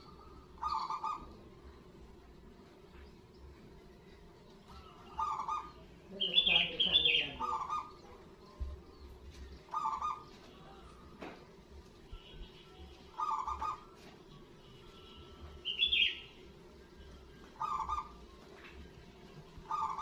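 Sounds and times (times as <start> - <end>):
dove cooing: 0.0 - 1.7, 4.7 - 8.2, 9.6 - 11.2, 13.1 - 14.2, 17.4 - 18.6, 19.5 - 20.0
high sharp bird chirp: 15.6 - 16.4.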